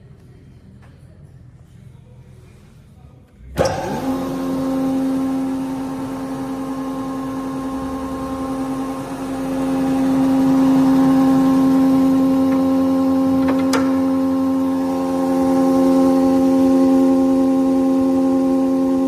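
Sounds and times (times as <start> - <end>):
planer spinning up and whining: 3.6 - 19.0.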